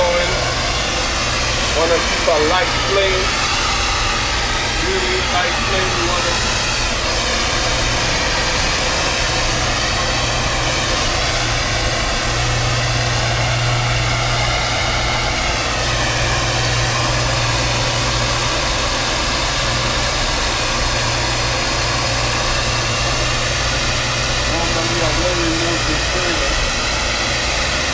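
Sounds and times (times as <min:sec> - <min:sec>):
constant low hum: 0:00.0 - 0:27.9
soldering torch hissing: 0:00.0 - 0:27.9.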